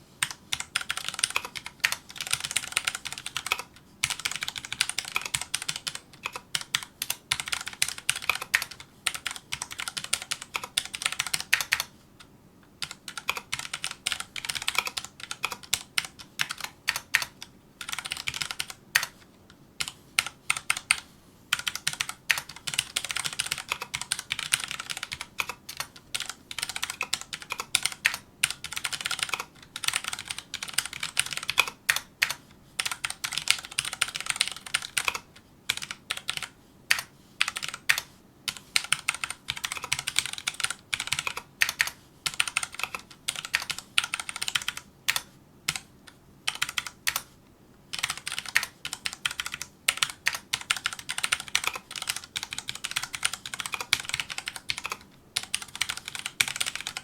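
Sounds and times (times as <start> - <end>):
fast mechanical keyboard typing: 0.2 - 11.9, 12.8 - 19.2, 19.8 - 45.9, 46.5 - 47.3, 47.9 - 57.0.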